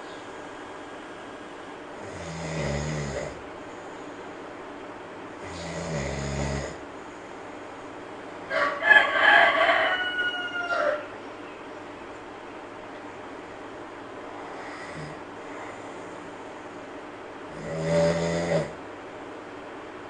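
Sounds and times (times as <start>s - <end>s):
monkey snoring: 2.0s - 3.4s, 5.4s - 6.8s, 14.4s - 16.1s, 17.5s - 18.8s.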